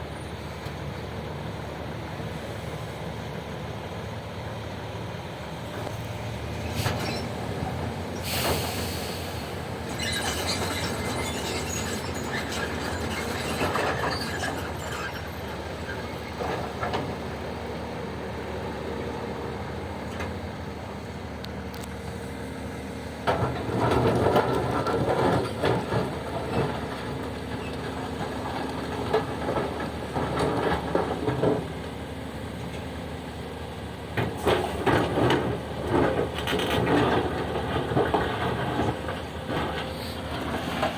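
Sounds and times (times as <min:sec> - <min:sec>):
diesel engine running: 0:00.0 - 0:40.9
metallic clattering and squealing: 0:06.6 - 0:17.0, 0:23.3 - 0:31.6, 0:34.4 - 0:40.9.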